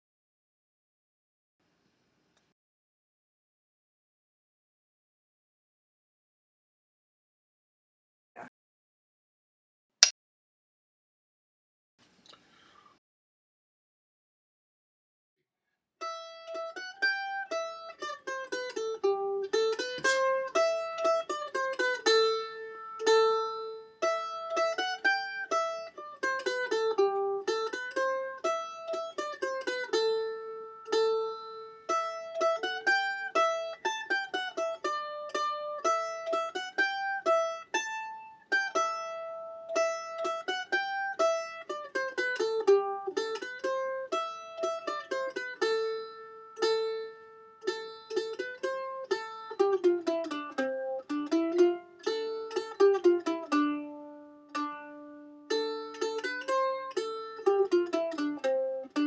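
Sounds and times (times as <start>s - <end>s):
plucked string instrument melody: 16.0s - 59.0s.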